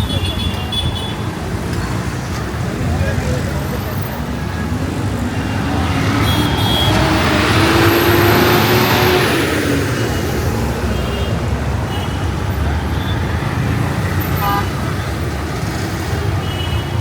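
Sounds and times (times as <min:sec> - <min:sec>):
street traffic rumble: 0:00.0 - 0:17.0
vehicle passing close by: 0:02.6 - 0:16.0.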